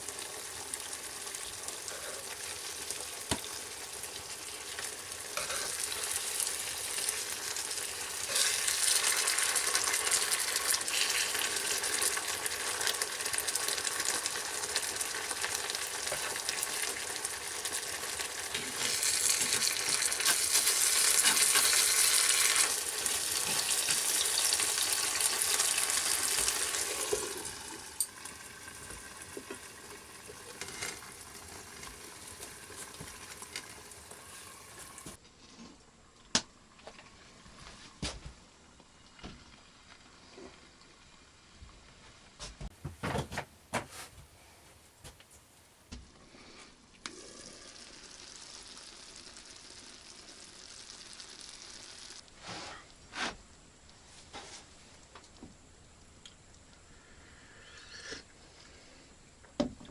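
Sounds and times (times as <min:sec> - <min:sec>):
food sizzling in a pan: 0:00.0 - 0:35.2, 0:46.4 - 0:52.8.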